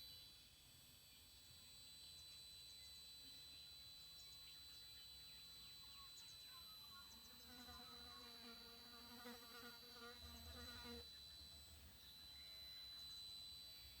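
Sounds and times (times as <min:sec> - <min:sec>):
flying insect buzzing: 0:06.9 - 0:12.0.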